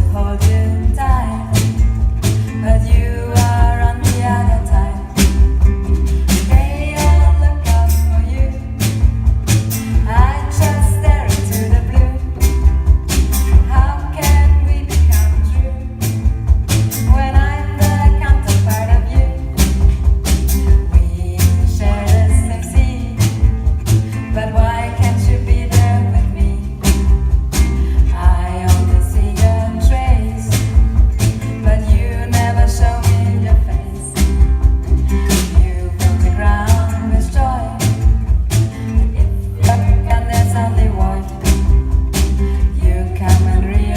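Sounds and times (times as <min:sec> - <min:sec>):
bass guitar: 0:00.0 - 0:43.9
guitar: 0:00.0 - 0:43.9
steady drumbeat: 0:00.0 - 0:43.9
person singing: 0:06.1 - 0:09.0, 0:13.5 - 0:16.2, 0:17.0 - 0:19.9, 0:27.7 - 0:34.4, 0:35.0 - 0:43.9.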